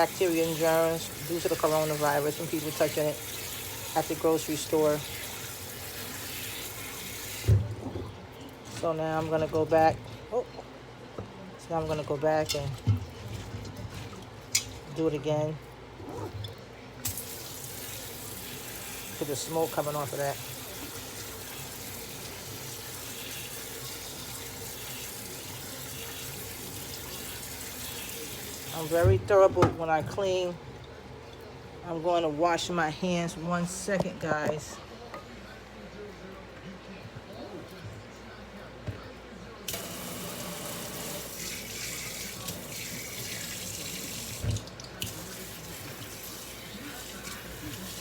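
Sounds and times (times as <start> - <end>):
tap water running onto leaves: 0.0 - 7.6, 17.0 - 29.2, 39.7 - 48.0.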